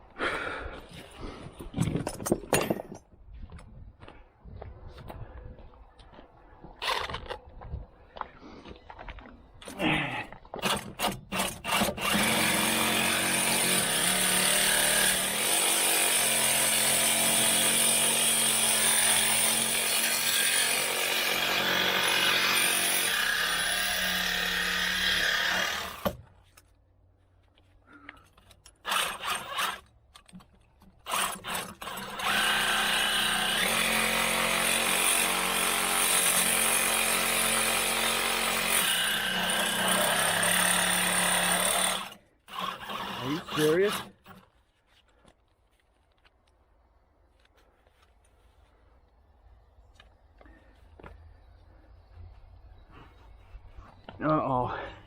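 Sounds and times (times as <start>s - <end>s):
handheld power tool running: 10.6s - 26.2s, 28.8s - 29.9s, 31.0s - 44.4s.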